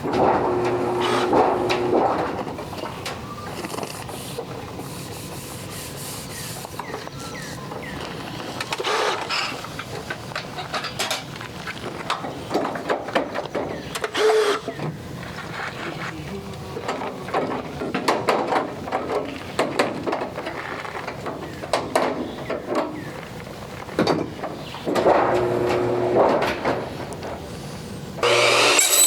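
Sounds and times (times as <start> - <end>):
machine whirring: 0.4 - 2.2, 28.2 - 29.0.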